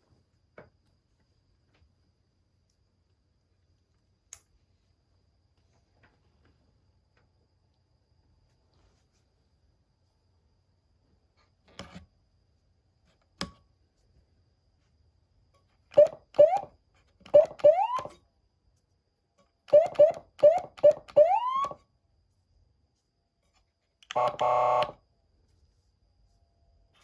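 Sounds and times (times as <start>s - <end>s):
electronic siren chirps: 15.9s - 16.7s, 17.3s - 18.2s, 19.7s - 21.8s, 24.1s - 25.0s
buzzing horn tone: 24.1s - 25.0s.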